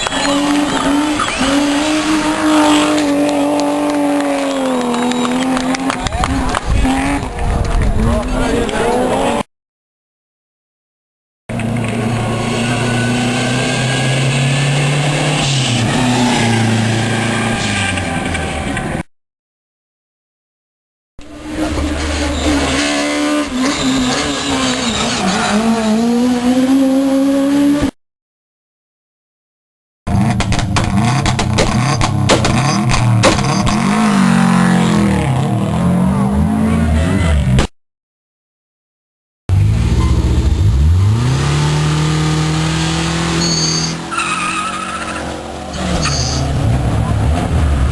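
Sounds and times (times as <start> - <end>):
rally car engine revving: 0.0 - 9.4, 11.5 - 19.0, 21.2 - 28.0, 30.1 - 37.7, 39.5 - 47.9
tyres squealing: 43.4 - 46.5.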